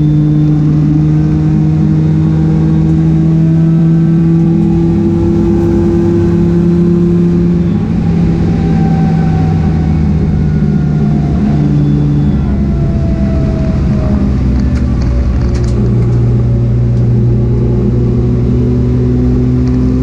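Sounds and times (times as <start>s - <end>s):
race car engine revving: 0.0s - 20.0s.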